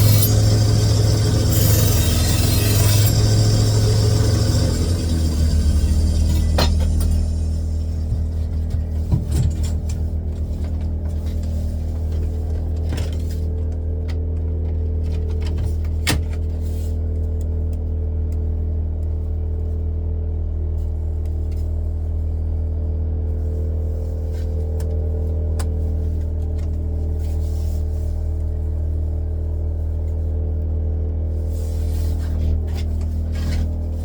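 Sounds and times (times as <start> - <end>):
electric motor humming: 0.0 - 8.4.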